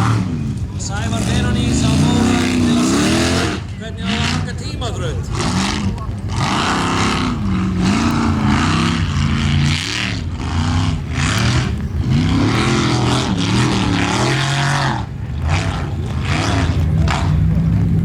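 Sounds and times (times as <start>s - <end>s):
truck engine revving hard: 0.0s - 18.0s.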